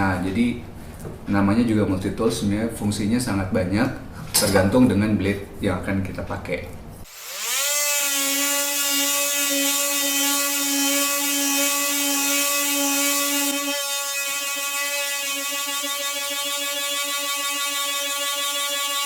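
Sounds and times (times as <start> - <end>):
oscillating multi-tool buzzing: 7.1 - 19.0.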